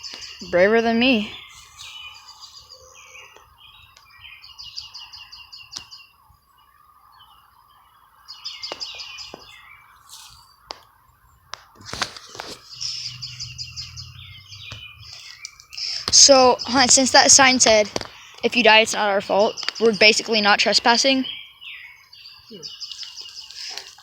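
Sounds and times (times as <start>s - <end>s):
songbird chirping: 0.0s - 24.0s
sharp clicks: 14.7s - 16.4s.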